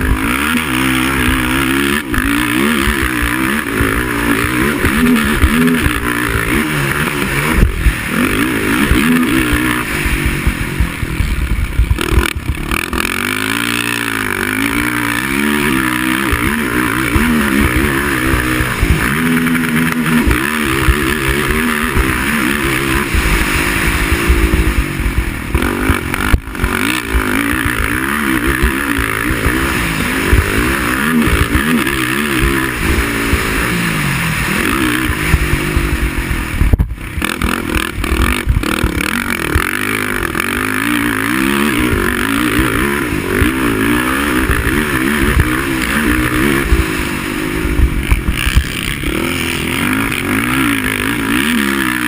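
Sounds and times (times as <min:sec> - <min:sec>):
quad engine revving: 0:00.0 - 0:52.0
steady rushing noise: 0:00.0 - 0:52.0.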